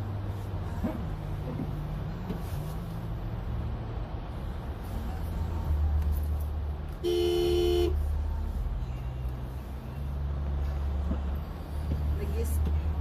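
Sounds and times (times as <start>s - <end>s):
vehicle driving rumble: 0.0s - 13.0s
car horn honk: 7.0s - 8.0s.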